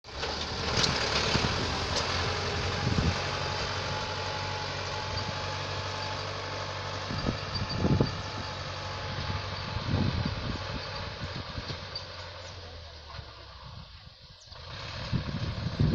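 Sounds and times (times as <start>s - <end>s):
tractor engine running: 0.0s - 15.9s.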